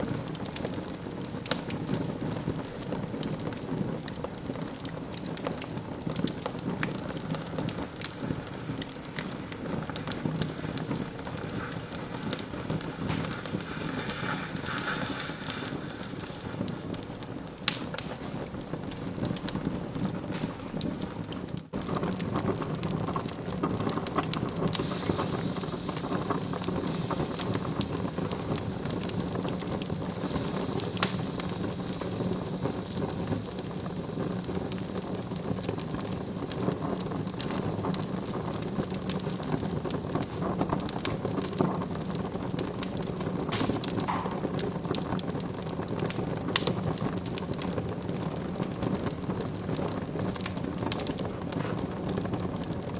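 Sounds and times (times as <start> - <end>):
wood fire crackling: 0.0 - 52.9.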